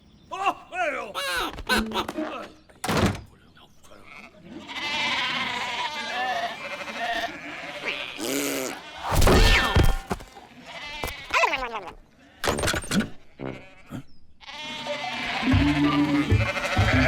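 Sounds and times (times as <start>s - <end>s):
cartoon sheep bleating: 13.3s - 17.0s
music with steady bass line: 15.5s - 17.0s.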